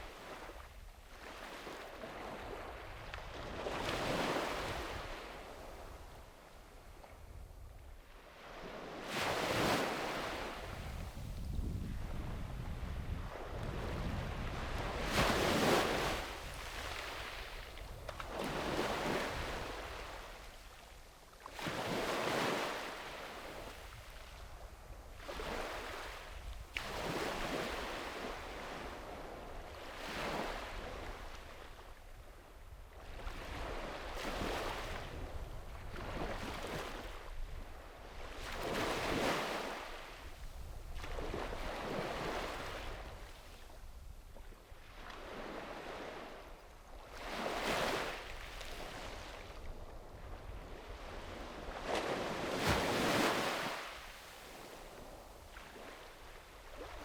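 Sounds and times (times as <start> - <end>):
sea waves breaking on beach: 1.2 - 5.6, 8.3 - 11.0, 13.3 - 20.5, 21.5 - 24.0, 38.2 - 43.7, 44.8 - 57.0.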